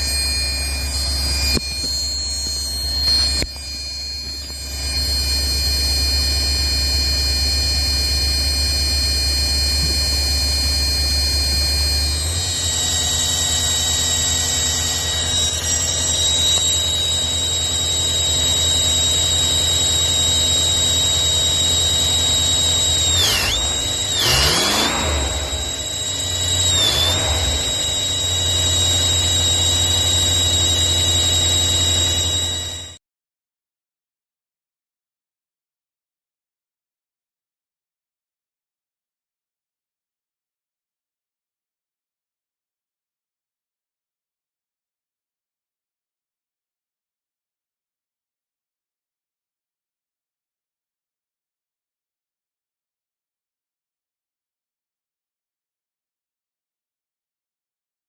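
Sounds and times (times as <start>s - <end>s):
high-pitched squeal: 0.0s - 33.0s.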